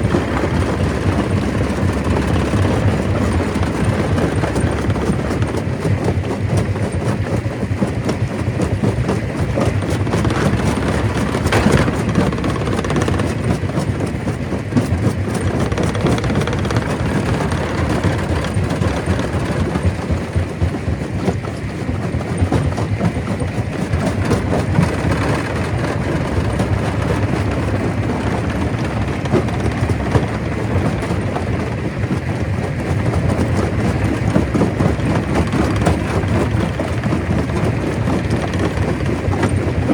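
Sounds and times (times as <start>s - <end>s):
stone crusher grinding rock: 9.0s - 20.2s
stones rattling: 10.0s - 13.6s.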